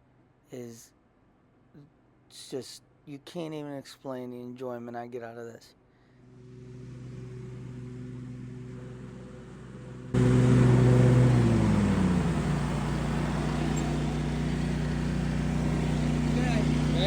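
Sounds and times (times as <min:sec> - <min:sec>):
riding lawn mower engine running: 0:06.3 - 0:17.0.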